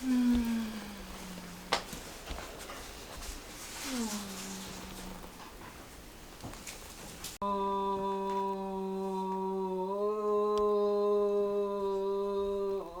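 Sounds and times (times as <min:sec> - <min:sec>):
woman humming low: 0:00.0 - 0:02.2, 0:03.7 - 0:05.6, 0:07.4 - 0:13.0.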